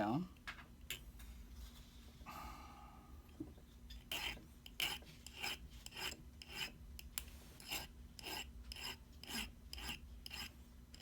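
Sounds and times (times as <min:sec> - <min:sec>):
hand file scraping brass wire: 0:03.9 - 0:06.8, 0:07.6 - 0:11.0.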